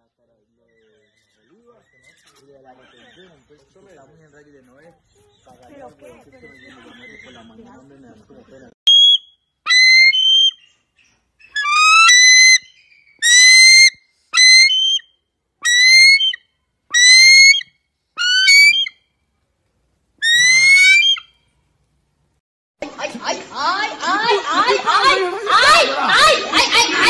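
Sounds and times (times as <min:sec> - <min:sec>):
short high whistled calls: 0:08.9 - 0:10.8, 0:11.4 - 0:19.0, 0:20.2 - 0:21.4.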